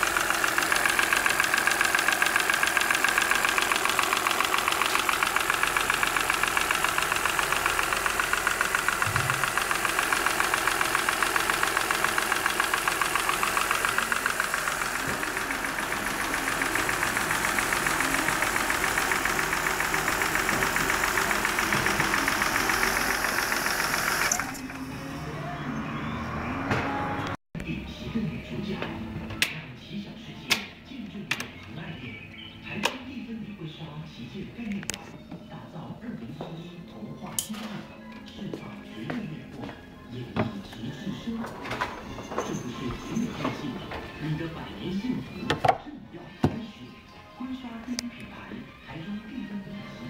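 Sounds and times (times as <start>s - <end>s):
rapid valvetrain ticking: 0.0s - 24.5s
engine idling: 0.0s - 25.8s.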